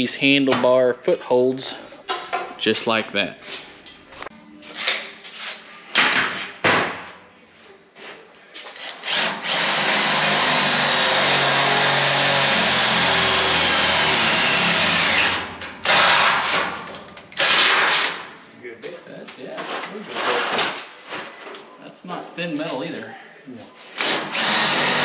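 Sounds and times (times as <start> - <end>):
power drill boring through steel: 9.0 - 16.5, 24.0 - 25.0.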